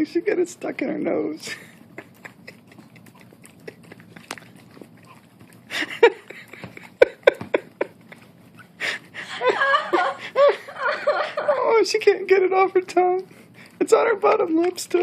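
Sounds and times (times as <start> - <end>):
dog licking and smacking lips: 1.5 - 9.2, 12.2 - 15.0.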